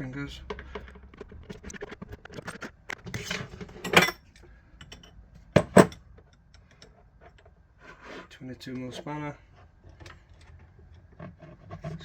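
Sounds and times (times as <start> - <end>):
metal tools clinking and scraping: 3.1 - 7.0.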